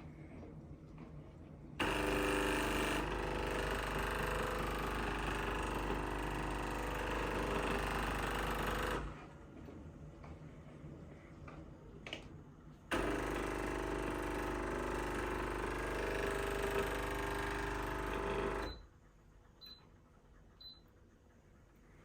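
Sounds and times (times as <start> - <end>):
coffee machine pump humming: 1.8 - 9.2, 12.9 - 18.8.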